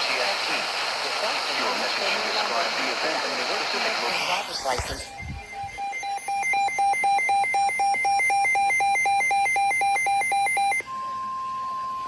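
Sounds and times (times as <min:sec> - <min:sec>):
shrill rapid alarm beeps: 0:04.8 - 0:12.0.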